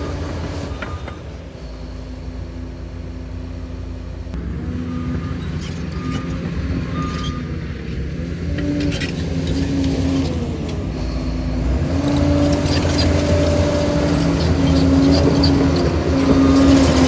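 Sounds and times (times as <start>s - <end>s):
bulldozer diesel drone: 0.0s - 17.0s
short beeps: 4.9s - 7.5s.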